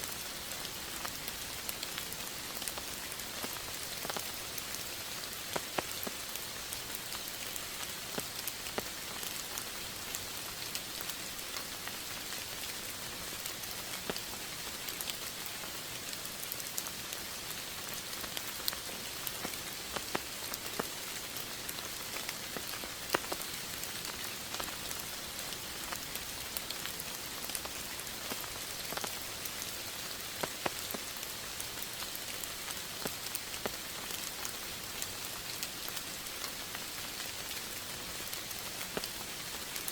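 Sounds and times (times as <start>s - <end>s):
steady rain falling: 0.0s - 39.9s
raindrops tapping on surface: 18.2s - 21.0s, 30.2s - 31.2s.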